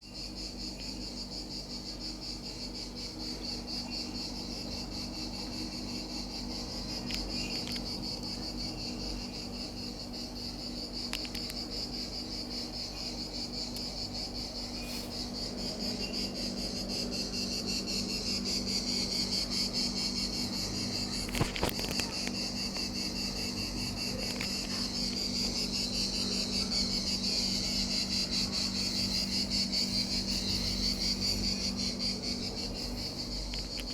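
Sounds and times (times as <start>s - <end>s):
insects chirping: 0.0s - 33.9s
low steady hum: 20.1s - 33.9s.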